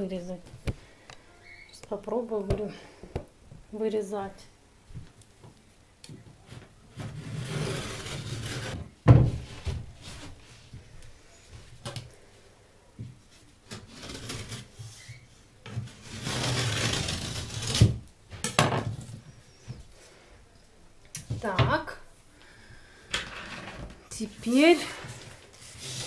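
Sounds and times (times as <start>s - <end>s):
blade rasping through drywall: 6.9s - 8.9s, 13.7s - 18.0s, 25.6s - 26.0s.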